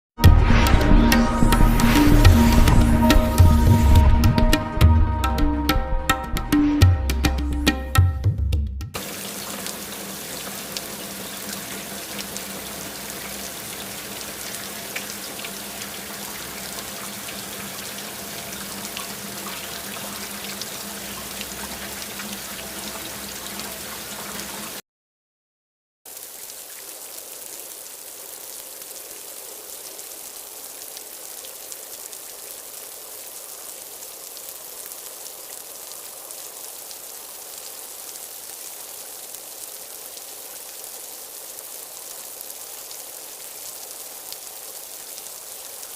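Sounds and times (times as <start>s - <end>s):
rain falling: 0.2s - 8.4s, 9.0s - 24.8s, 26.1s - 45.9s
rain drop ticks: 10.4s - 17.7s.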